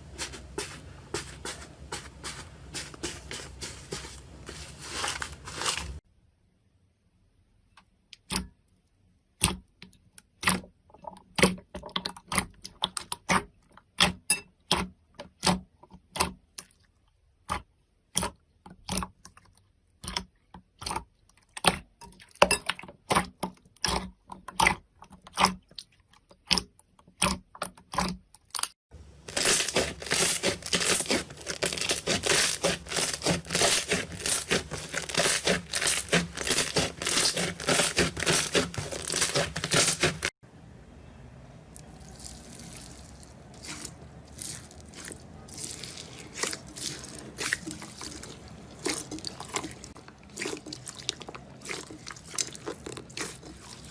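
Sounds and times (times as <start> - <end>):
slime crackling: 0.0 - 6.0, 29.2 - 40.4, 41.8 - 53.9.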